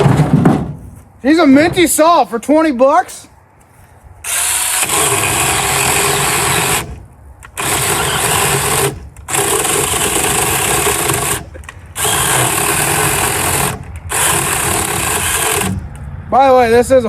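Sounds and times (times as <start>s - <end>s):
person talking: 1.2s - 3.3s
electric chainsaw cutting log: 4.2s - 15.9s.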